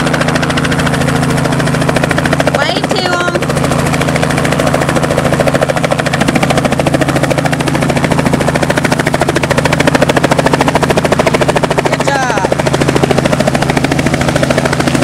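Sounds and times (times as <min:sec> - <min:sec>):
helicopter rotors beating: 0:00.0 - 0:15.0.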